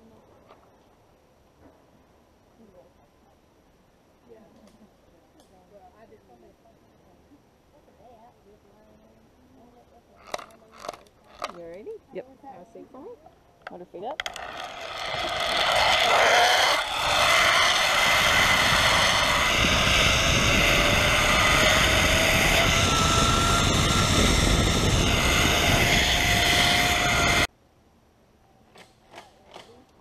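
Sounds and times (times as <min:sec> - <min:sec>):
zip line trolley whirring on cable: 0:14.2 - 0:27.5.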